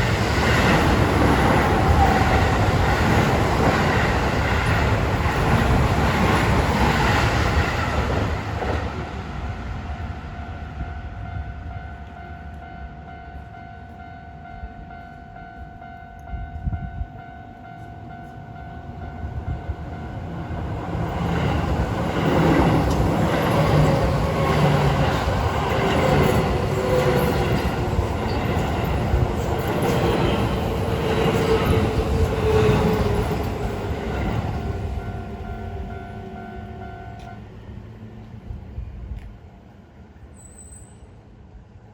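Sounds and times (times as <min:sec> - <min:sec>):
level-crossing warning bell ringing: 0:10.2 - 0:37.4.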